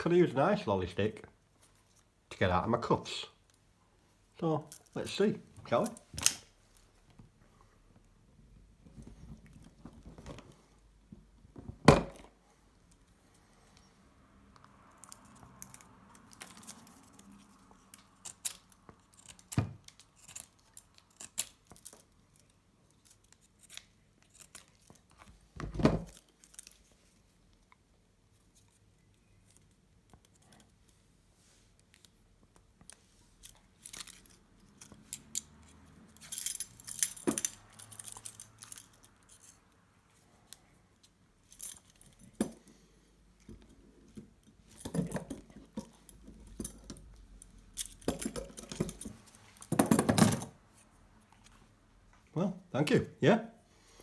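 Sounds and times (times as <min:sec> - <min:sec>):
handcuffs clicking and rattling: 0:14.9 - 0:25.2, 0:26.1 - 0:26.9, 0:32.8 - 0:39.7, 0:41.5 - 0:42.6, 0:44.7 - 0:50.6.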